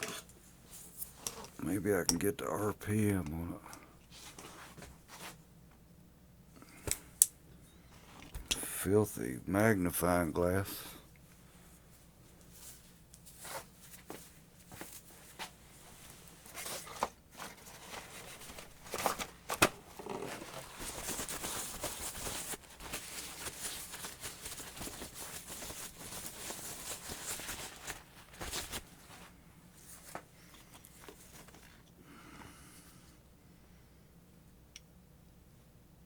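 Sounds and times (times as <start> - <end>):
rubbing and rustling: 4.1 - 5.4, 11.9 - 31.9.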